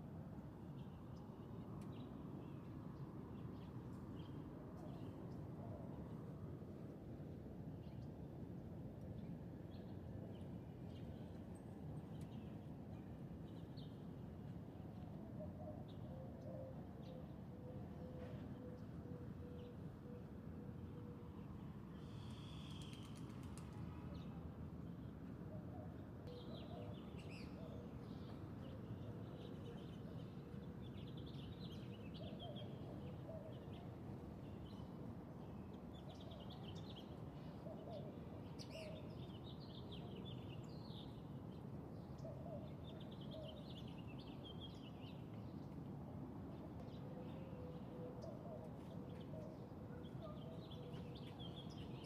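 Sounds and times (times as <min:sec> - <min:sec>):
songbirds chirping: 0:07.7 - 0:52.0.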